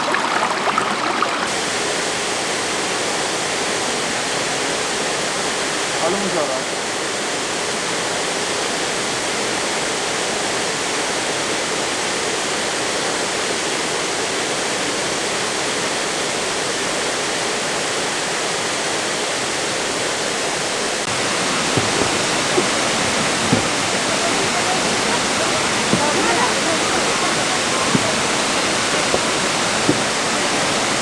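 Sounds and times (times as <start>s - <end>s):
waterfall rushing: 0.0s - 8.2s, 19.8s - 31.0s.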